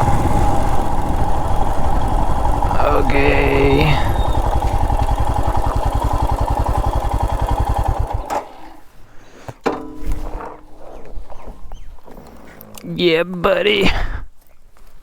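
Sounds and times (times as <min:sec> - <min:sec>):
motorcycle engine idling: 0:00.0 - 0:08.6.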